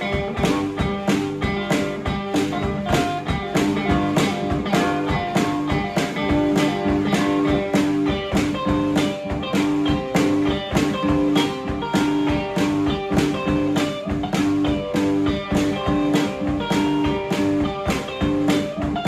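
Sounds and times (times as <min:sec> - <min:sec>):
blues guitar riff: 0:00.0 - 0:19.0
steady drum beat: 0:00.0 - 0:19.0.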